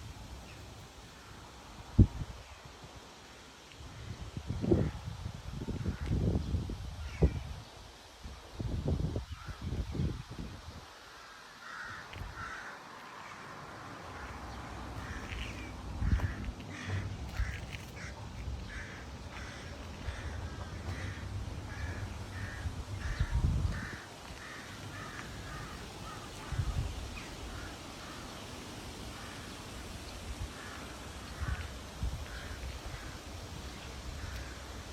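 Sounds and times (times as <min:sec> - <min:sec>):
birds calling harshly: 0:14.1 - 0:28.6.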